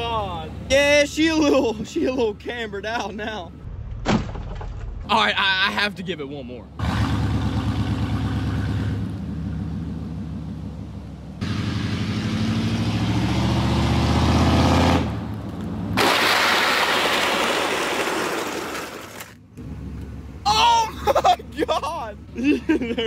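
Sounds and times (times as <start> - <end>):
pickup engine revving: 6.8 - 17.4.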